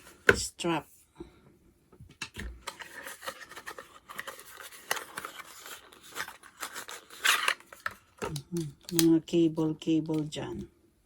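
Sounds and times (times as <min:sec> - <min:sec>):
plastic packaging crinkling: 0:02.8 - 0:09.1.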